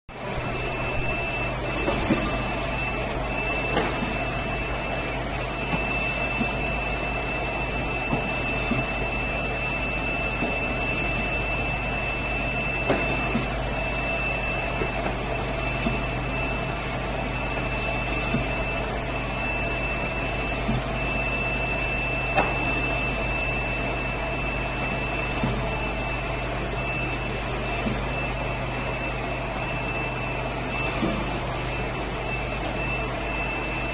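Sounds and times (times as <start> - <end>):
low hum: 0.1 - 16.6
machine high-pitched whine: 0.1 - 33.9.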